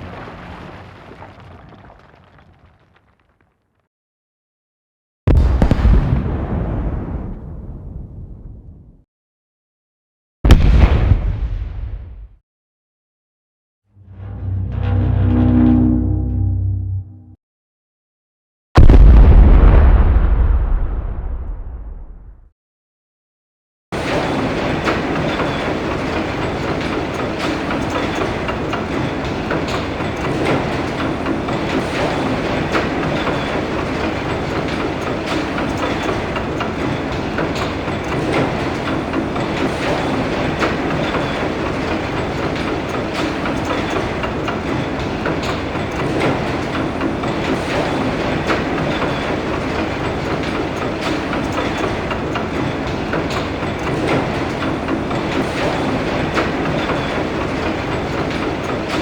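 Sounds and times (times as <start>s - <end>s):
mechanical rumble with rattling clicks: 24.6s - 59.0s.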